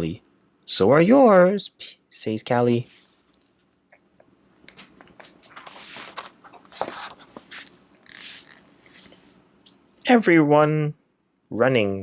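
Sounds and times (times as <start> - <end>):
book page rustling: 4.7 - 9.2.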